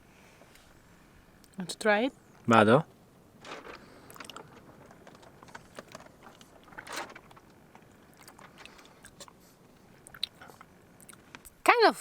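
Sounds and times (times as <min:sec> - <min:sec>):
breathy rustle: 0:03.4 - 0:07.4
crunchy chewing clicks: 0:03.7 - 0:11.6.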